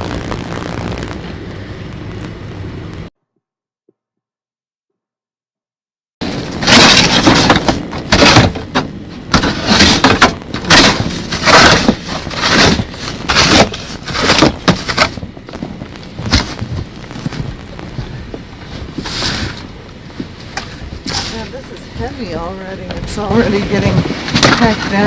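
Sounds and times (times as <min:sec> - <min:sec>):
shovel scraping packed snow: 0:09.3 - 0:15.2, 0:18.9 - 0:19.7, 0:20.6 - 0:21.7, 0:23.1 - 0:25.0.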